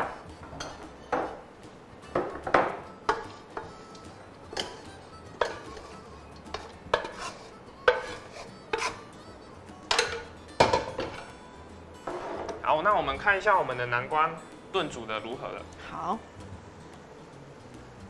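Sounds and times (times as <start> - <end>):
metal utensil clinking on pan: 6.5 - 7.3, 9.9 - 11.2.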